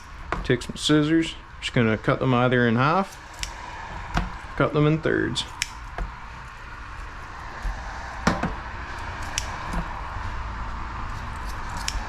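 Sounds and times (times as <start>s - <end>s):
low background noise: 0.0s - 12.0s
scissors snipping fish: 11.2s - 12.0s.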